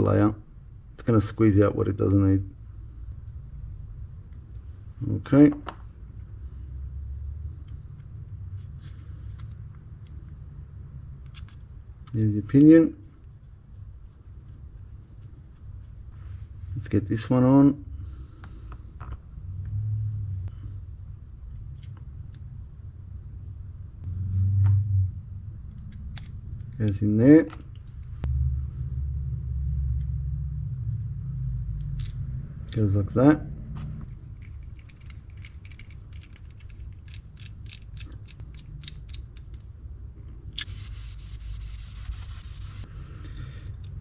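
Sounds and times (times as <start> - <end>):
low hum: 0.0 - 44.0
small metal parts clicking: 34.3 - 39.7.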